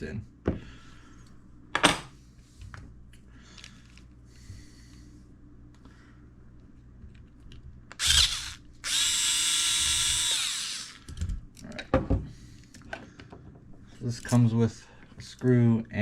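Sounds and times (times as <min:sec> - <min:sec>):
electric drill whining: 0:08.0 - 0:11.1.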